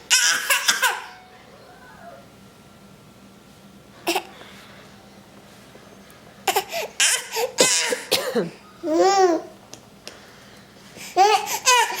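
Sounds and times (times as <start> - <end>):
babies babbling: 8.8 - 9.5.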